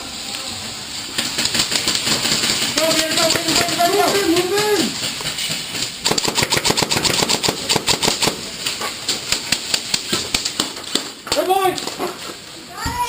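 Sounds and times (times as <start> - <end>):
airsoft rifle firing: 6.0 - 11.7.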